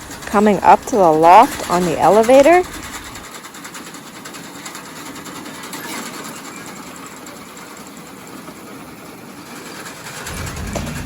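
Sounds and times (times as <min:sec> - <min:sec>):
bale elevator rattling: 0:00.0 - 0:07.8.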